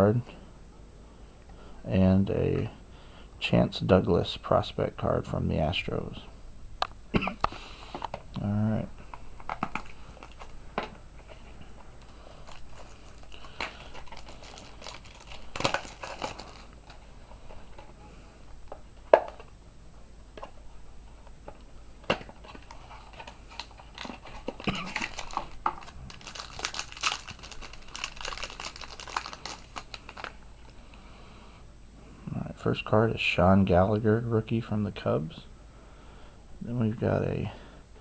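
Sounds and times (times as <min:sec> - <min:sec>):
wrapper crinkling and tearing: 0:12.0 - 0:17.6, 0:22.2 - 0:30.8.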